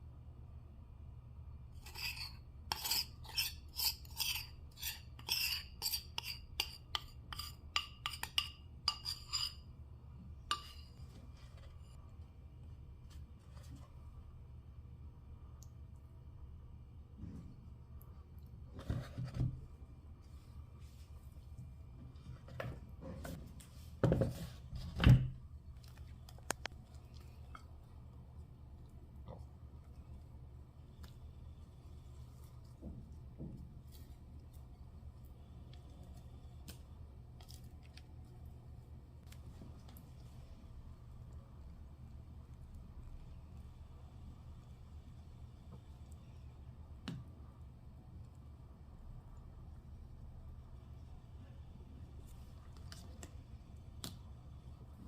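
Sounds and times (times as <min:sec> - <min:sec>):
steady low hum: 0:00.0 - 0:55.0
kitchen utensil scraping: 0:01.8 - 0:09.7, 0:10.5 - 0:12.0.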